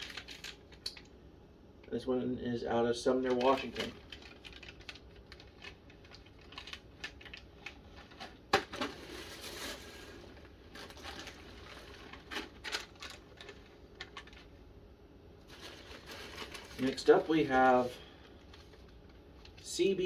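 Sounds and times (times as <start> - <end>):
packaging rustling and clicking: 0.0 - 1.1, 3.2 - 14.5, 15.5 - 17.4.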